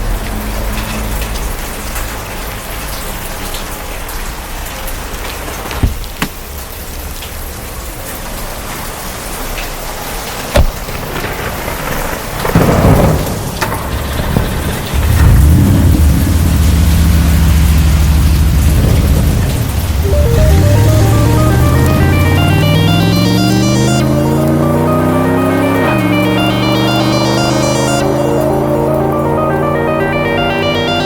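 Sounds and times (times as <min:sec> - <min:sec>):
rain on a car: 0:00.0 - 0:20.0.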